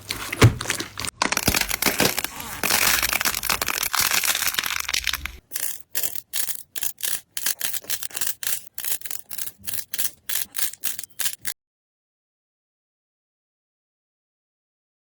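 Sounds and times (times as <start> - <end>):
slime crackling and scratching: 0.0 - 11.6.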